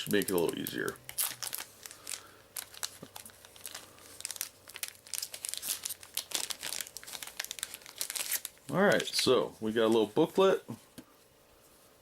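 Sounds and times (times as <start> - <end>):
package crinkling: 0.0 - 9.3
package being torn open: 0.1 - 9.1.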